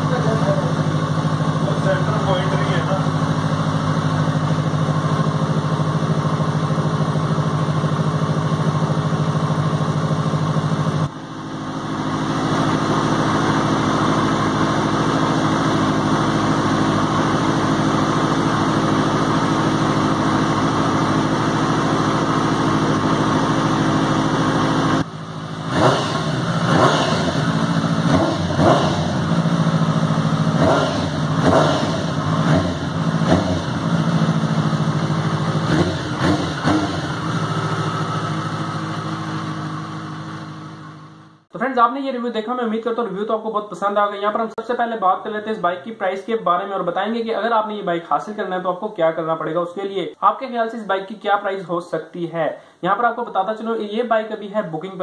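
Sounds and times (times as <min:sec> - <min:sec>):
motorcycle engine idling and revving: 0:00.0 - 0:41.5.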